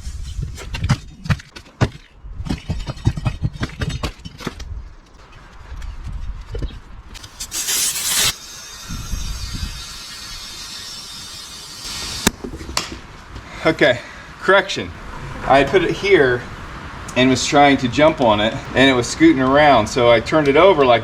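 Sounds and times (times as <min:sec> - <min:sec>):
air hiss burst: 0:07.2 - 0:12.6
compressed air filling tire: 0:07.2 - 0:12.8.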